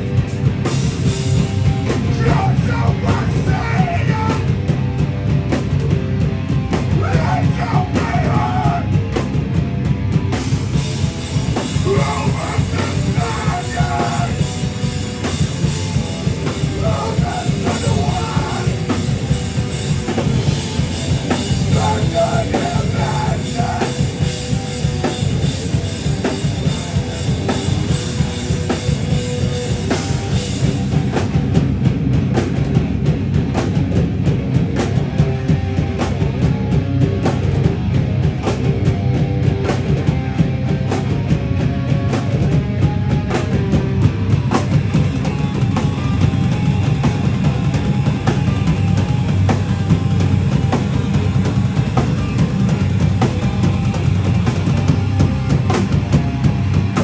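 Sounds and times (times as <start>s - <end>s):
heavy rock band playing: 0.0s - 57.0s
pounding drum kit: 0.0s - 57.0s
person singing: 2.1s - 4.5s, 7.0s - 9.0s, 11.8s - 14.5s, 16.6s - 19.0s, 21.7s - 24.1s.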